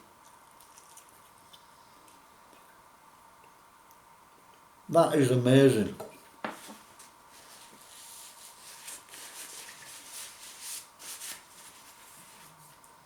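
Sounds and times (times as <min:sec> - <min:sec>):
faint steady high hum: 0:00.0 - 0:13.0
rubbing and rustling: 0:06.5 - 0:12.8
soft scrapes: 0:06.6 - 0:12.8.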